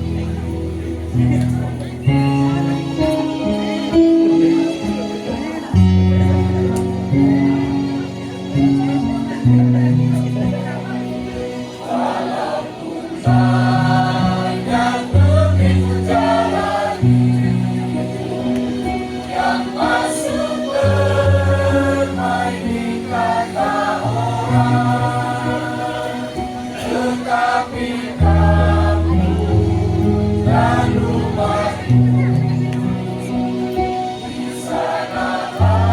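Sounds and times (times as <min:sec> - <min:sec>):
held low accompaniment notes: 0:00.0 - 0:12.2, 0:12.8 - 0:35.9
choir singing in parts: 0:11.7 - 0:32.5, 0:34.1 - 0:35.9.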